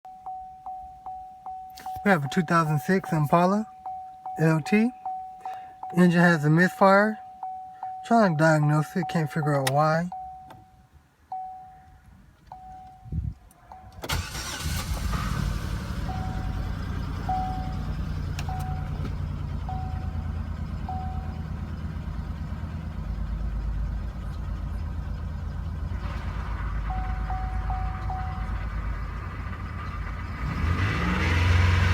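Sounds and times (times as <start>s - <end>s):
car warning chime beeping: 0.1s - 15.0s, 15.9s - 22.8s, 26.8s - 29.1s
car engine cranking and idling: 0.2s - 10.6s, 11.2s - 31.9s.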